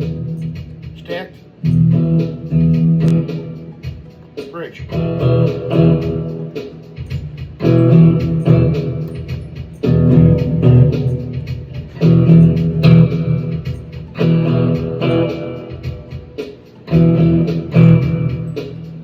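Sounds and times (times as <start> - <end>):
electric guitar chords ringing: 0.0 - 19.0.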